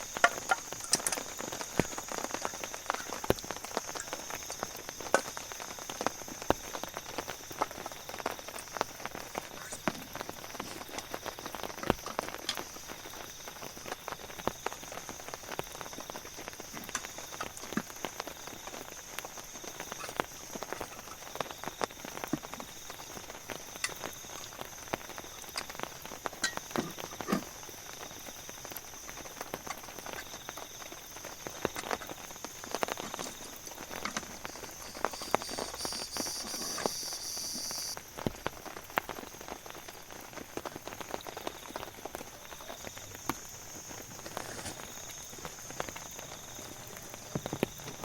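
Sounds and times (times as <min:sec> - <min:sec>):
raindrops pattering: 0:00.0 - 0:48.0
steady hiss: 0:00.0 - 0:48.0
high buzz: 0:34.8 - 0:38.0.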